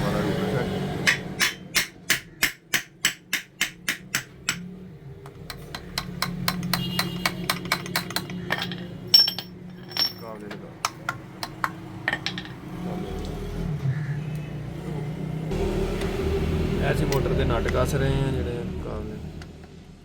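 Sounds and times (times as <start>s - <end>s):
hammer tapping on metal: 1.0s - 12.6s.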